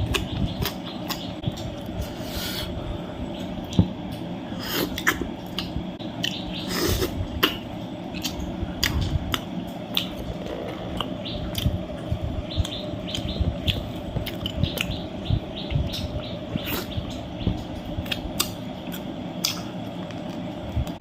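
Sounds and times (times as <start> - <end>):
person chewing: 4.6 - 11.8, 12.6 - 14.9, 18.0 - 20.8
mouth clicks and smacks: 4.8 - 7.6, 15.8 - 19.7.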